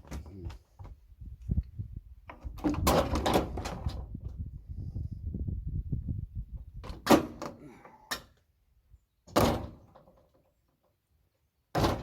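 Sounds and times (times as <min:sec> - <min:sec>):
sharp knocks and thuds: 0:11.7 - 0:12.0.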